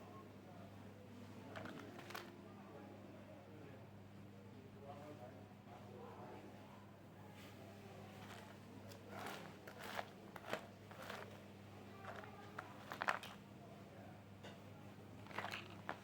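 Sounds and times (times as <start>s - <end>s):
plastic toy pieces clicking: 9.2s - 11.3s, 12.0s - 13.4s, 15.3s - 16.0s.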